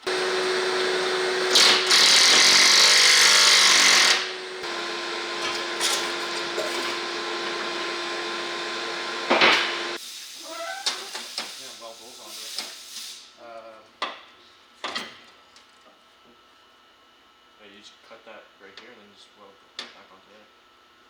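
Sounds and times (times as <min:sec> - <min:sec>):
power tool humming: 0:00.0 - 0:10.0.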